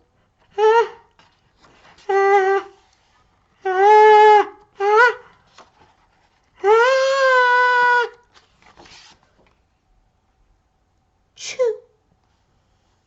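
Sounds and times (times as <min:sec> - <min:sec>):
high-pitched voice before sneeze: 0:11.4 - 0:11.9.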